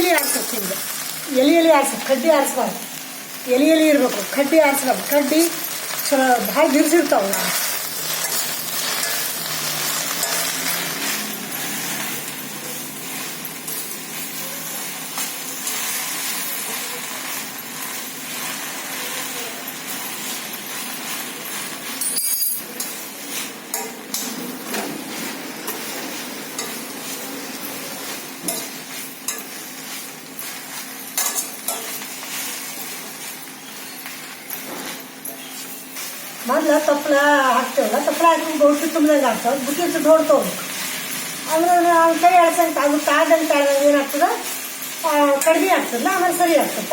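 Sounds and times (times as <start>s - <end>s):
leaves frying in oil: 0.0s - 46.9s
spoon scraping a pan: 7.3s - 12.1s.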